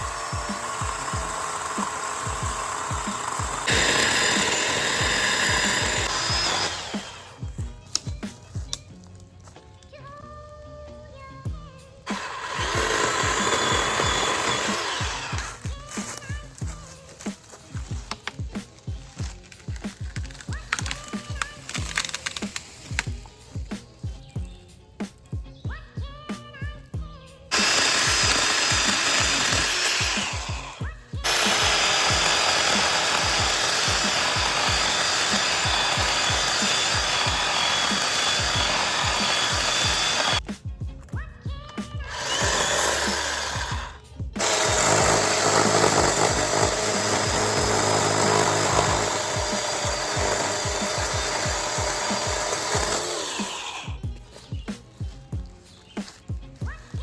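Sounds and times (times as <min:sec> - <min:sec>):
chainsaw cutting wood: 0:00.0 - 0:08.8, 0:12.0 - 0:24.3, 0:27.5 - 0:40.4, 0:42.0 - 0:57.0
background music with a beat: 0:40.4 - 0:44.4.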